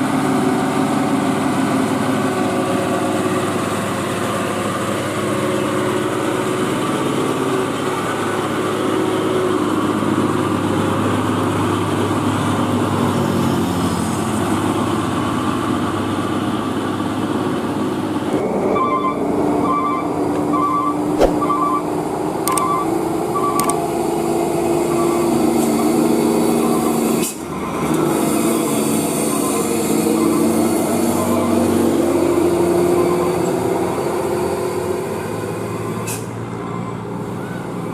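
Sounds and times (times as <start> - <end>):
heavy truck engines running: 0.0 - 37.9
short paired beeps: 22.5 - 23.8.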